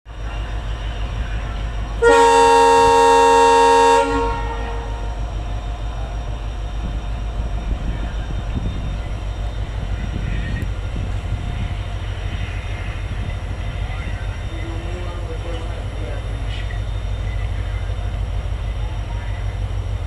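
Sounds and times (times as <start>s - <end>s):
diesel locomotive engine drone: 0.0s - 20.0s
locomotive horn blast: 2.0s - 5.5s.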